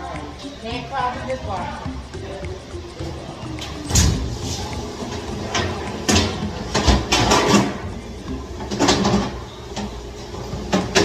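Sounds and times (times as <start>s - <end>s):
metal pots clattering: 8.5s - 11.0s.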